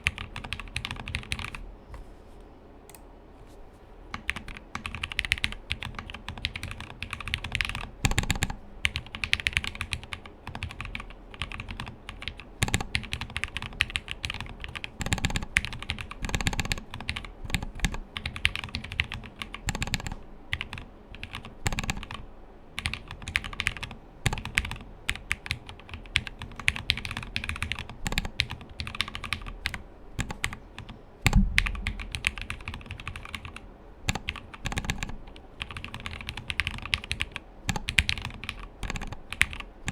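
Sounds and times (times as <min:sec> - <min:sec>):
fast typing on mechanical keyboard: 0:00.0 - 0:01.6, 0:04.2 - 0:39.9
deep keyboard thud: 0:31.3 - 0:32.5.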